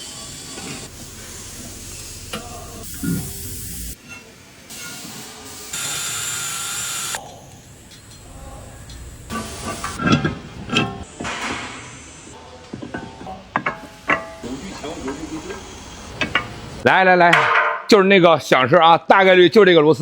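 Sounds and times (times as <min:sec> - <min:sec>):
air hissing bursts: 0:00.0 - 0:04.0
workshop hum: 0:00.0 - 0:17.9
sharp knocks: 0:17.3 - 0:17.9.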